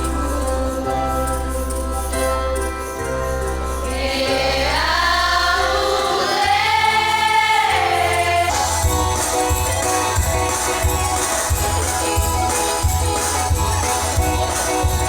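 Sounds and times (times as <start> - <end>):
choir holding long chords: 0.0 - 15.0
tambourine: 7.0 - 15.0.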